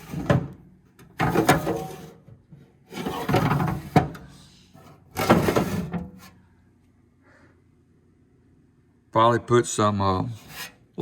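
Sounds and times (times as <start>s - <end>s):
metal drawers sliding: 0.0s - 2.2s, 2.9s - 4.3s, 5.1s - 6.3s.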